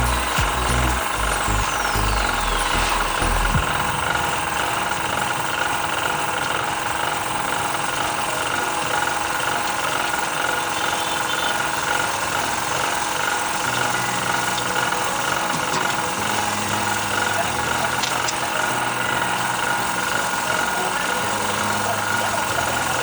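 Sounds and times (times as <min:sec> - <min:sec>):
low hum: 0:00.0 - 0:06.9
mechanical running noise: 0:00.0 - 0:23.0.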